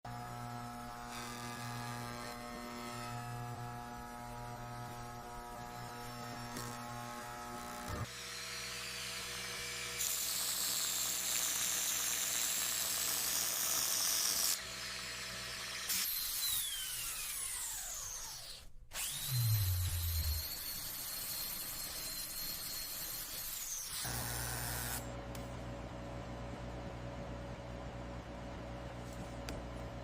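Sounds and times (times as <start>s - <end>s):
dental drill whine: 4.9s - 25.1s.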